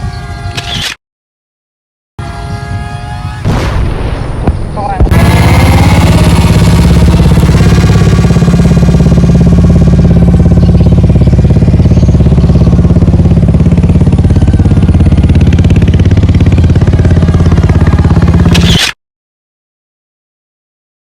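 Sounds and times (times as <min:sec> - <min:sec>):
motor running with pulsing beat: 0:05.1 - 0:18.8.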